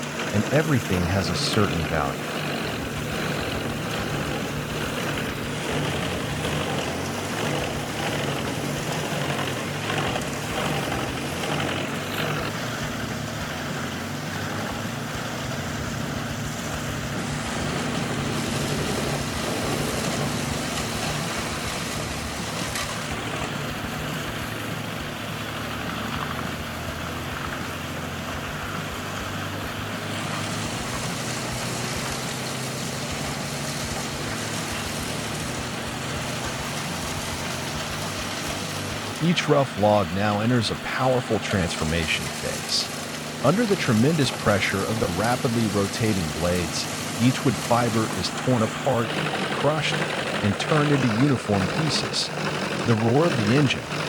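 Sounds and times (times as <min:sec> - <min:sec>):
wood chipper engine drone: 0:00.0 - 0:54.0
wood chipper grinding hiss: 0:00.0 - 0:54.0.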